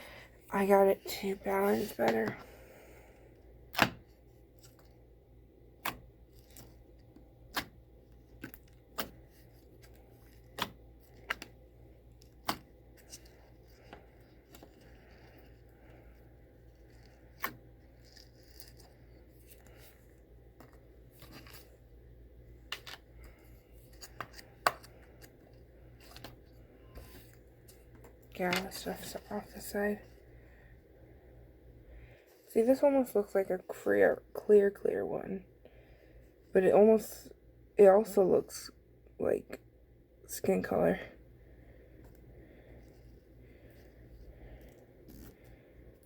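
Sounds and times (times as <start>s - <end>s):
faint low hum: 0.0s - 46.0s.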